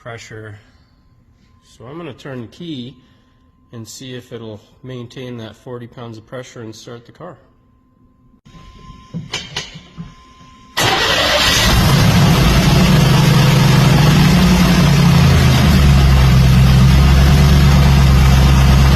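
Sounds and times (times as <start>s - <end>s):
car engine starting and idling: 10.8s - 18.9s.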